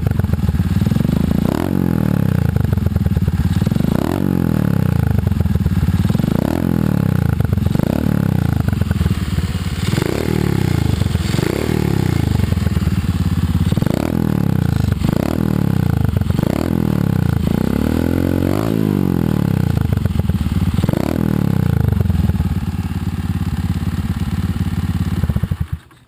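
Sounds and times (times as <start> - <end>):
small motorcycle engine revving: 0.0 - 26.0.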